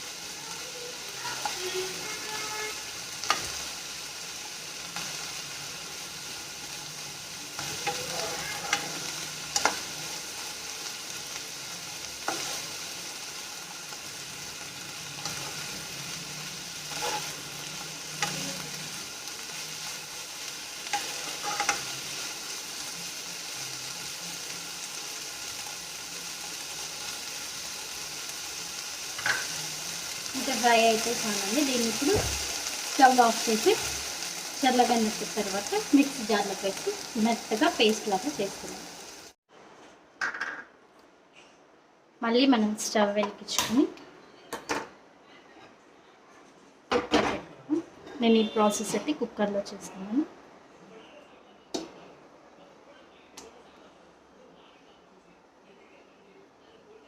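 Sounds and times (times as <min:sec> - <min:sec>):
leaves sizzling in a pan: 0:00.0 - 0:39.4.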